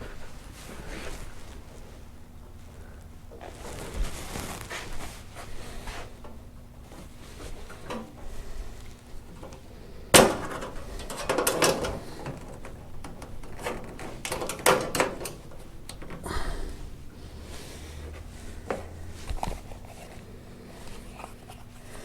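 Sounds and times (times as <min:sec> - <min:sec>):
knocks on steel panels: 0:10.1 - 0:15.4.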